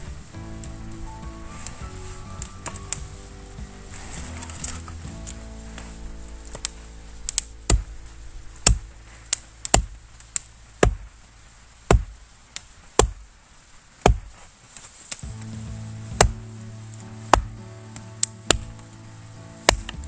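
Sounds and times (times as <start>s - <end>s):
background music held tones: 0.0s - 12.4s, 15.2s - 20.0s
firewood chopping: 11.9s - 12.2s, 14.0s - 14.3s.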